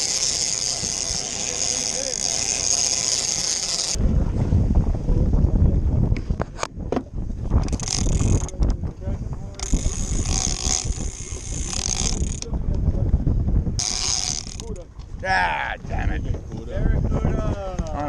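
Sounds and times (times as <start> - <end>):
fishing reel ratcheting whir: 0.0 - 4.0, 7.6 - 8.6, 9.6 - 12.5, 13.8 - 14.8
sharp reel clicks: 0.0 - 4.0, 7.7 - 8.6, 9.6 - 12.5, 13.8 - 14.7
wind buffeting microphone: 0.0 - 18.0.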